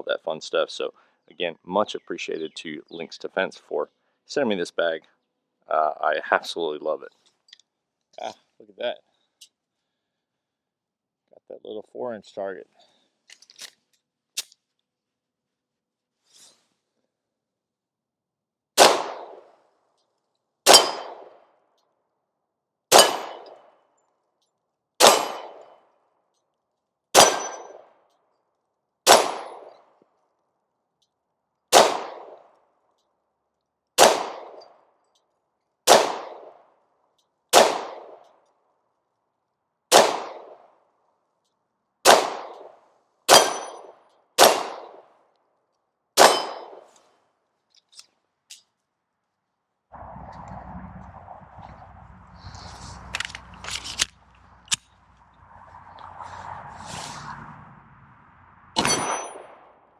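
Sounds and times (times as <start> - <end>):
pistol shots: 18.8 - 19.5, 20.7 - 21.4, 22.9 - 23.7, 25.0 - 25.6, 27.2 - 27.8, 29.1 - 29.8, 31.7 - 32.5, 34.0 - 34.6, 35.9 - 36.6, 37.5 - 38.2, 39.9 - 40.6, 42.0 - 45.0, 46.2 - 46.9, 58.8 - 59.7.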